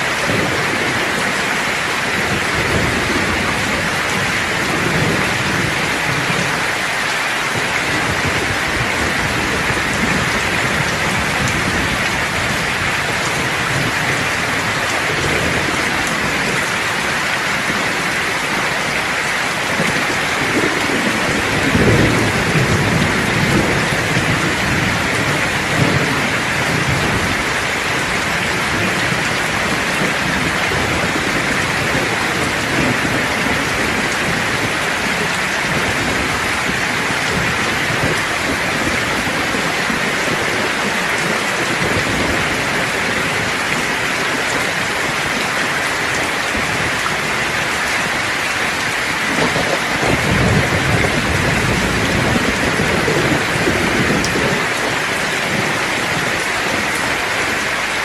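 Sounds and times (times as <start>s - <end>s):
steady rain: 0.0s - 58.0s
low roll of thunder: 19.6s - 57.2s.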